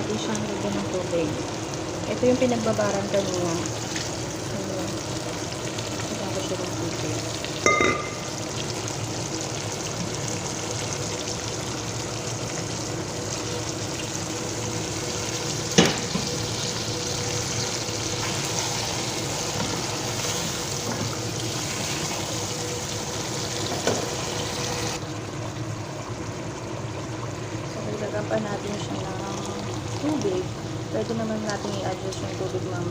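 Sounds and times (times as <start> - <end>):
water pouring and sizzling: 0.0 - 32.9.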